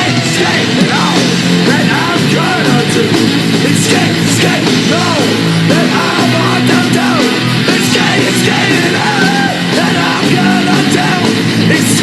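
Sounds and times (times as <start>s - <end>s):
heavy rock music: 0.0s - 12.0s.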